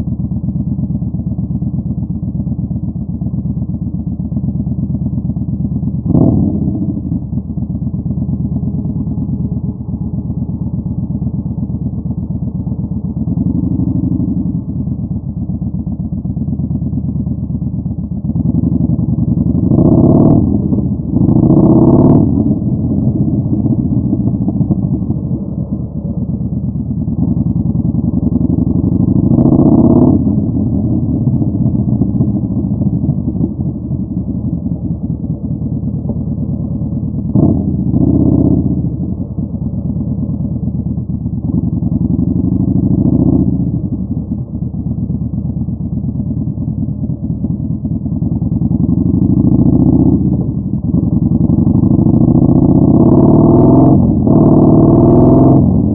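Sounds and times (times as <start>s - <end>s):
motorcycle engine revving: 3.2s - 55.9s.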